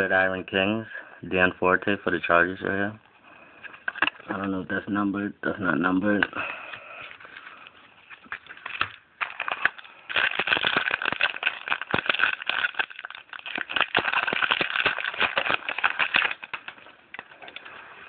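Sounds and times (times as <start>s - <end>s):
wrapper being torn and crinkled: 8.2s - 17.8s.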